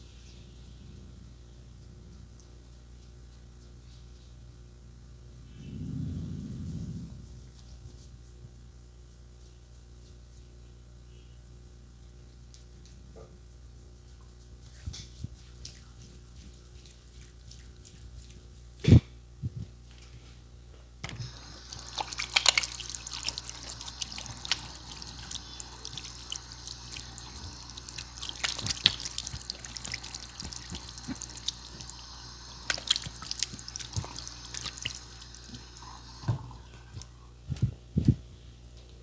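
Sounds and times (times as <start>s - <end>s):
water drips and clicks: 21.0s - 37.1s
water running and splashing: 21.1s - 37.1s.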